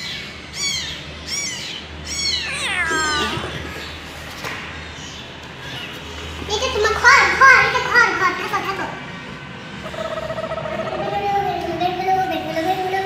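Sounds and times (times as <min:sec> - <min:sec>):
cat meowing: 0:02.2 - 0:03.9.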